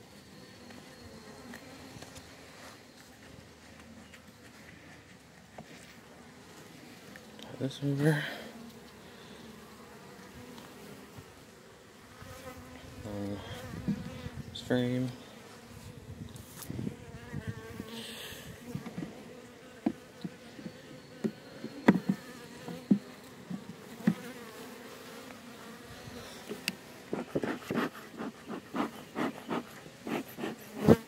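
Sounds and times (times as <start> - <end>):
bees buzzing: 7.6 - 31.0
wooden knocks of hive frames: 18.7 - 19.2, 19.8 - 24.3.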